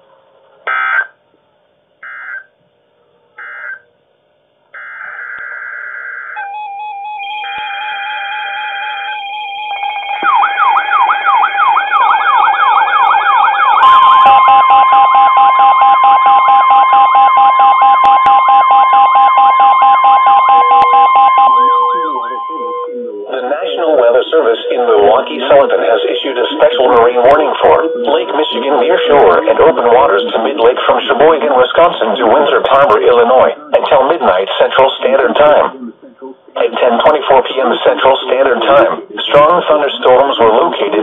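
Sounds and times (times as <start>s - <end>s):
steady warning tone: 4.7s - 35.8s
rising and falling alert tone: 4.8s - 17.0s, 18.5s - 30.1s
stepped electronic alarm beeps: 8.9s - 30.8s
data bursts: 17.8s - 33.2s.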